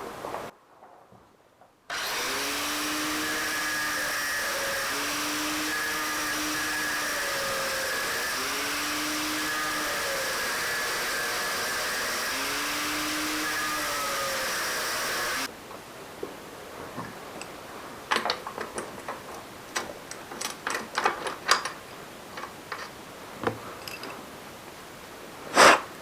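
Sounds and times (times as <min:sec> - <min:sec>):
angle grinder cutting metal: 0:01.9 - 0:15.5.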